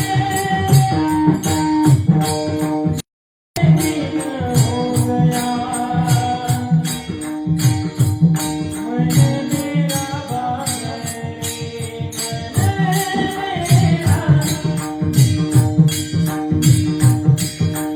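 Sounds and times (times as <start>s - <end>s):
person singing: 0.0s - 1.9s, 3.6s - 7.2s, 8.7s - 15.2s.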